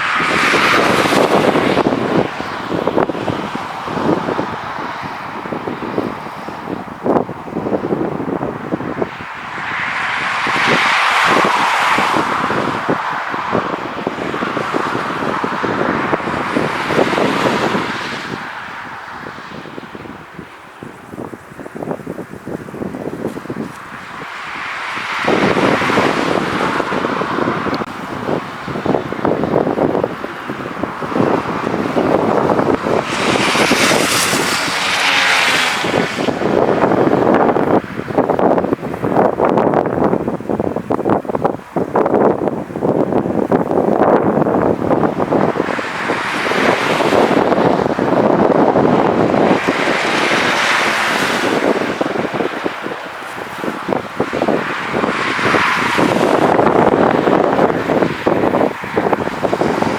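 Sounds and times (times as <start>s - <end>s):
jet engines roaring past: 0.0s - 59.9s
wind buffeting microphone: 0.0s - 59.9s.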